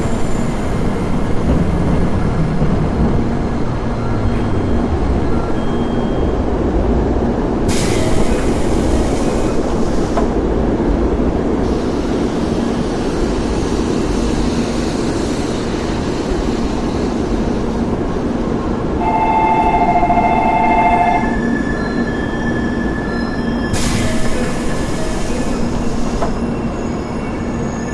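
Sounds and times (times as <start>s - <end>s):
train cars rumbling on track: 0.0s - 27.9s
high two-note tone: 19.0s - 21.4s.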